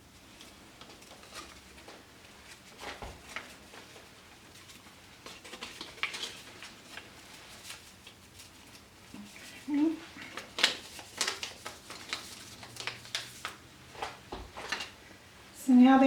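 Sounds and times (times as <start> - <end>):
light kitchen taps and rustles: 10.2 - 15.0.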